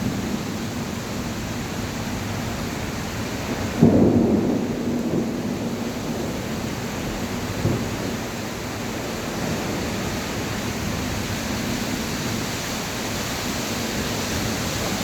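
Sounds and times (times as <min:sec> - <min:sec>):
heavy rain falling: 0:00.0 - 0:15.0
thunder rumble: 0:03.3 - 0:11.1.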